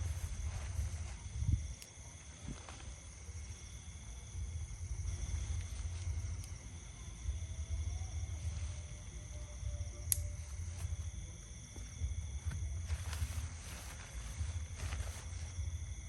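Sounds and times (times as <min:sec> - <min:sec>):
wind buffeting microphone: 0:00.0 - 0:01.8.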